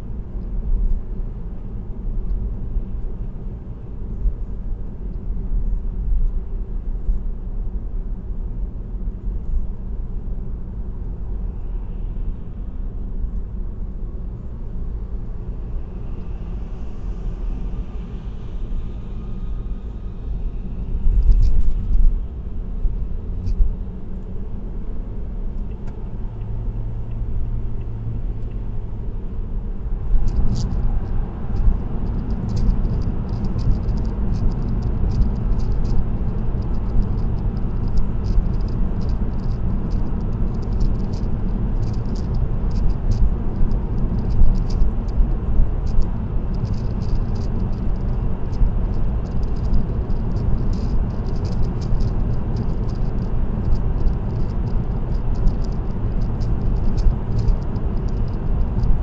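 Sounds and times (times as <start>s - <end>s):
car road and engine rumble: 0.0s - 59.0s
high-pitched ticking rattle: 45.9s - 59.0s.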